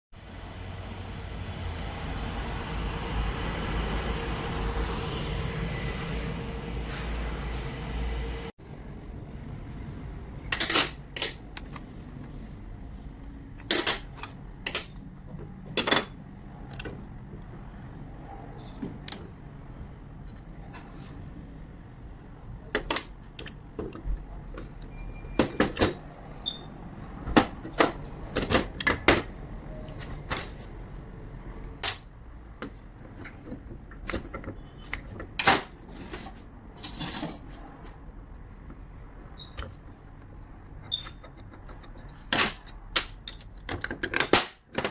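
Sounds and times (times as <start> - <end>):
steady background hum: 0.2 - 44.9
metal tools clinking: 10.4 - 11.8, 35.4 - 37.6.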